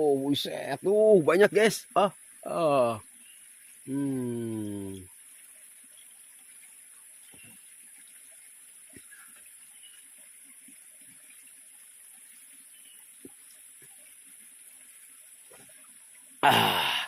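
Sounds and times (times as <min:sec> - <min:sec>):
high hiss: 0:00.0 - 0:05.1
water trickling: 0:00.0 - 0:17.0.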